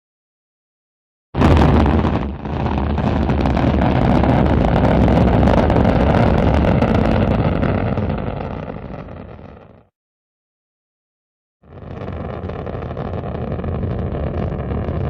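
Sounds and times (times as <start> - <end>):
rocket engines rumbling: 11.9 - 15.0.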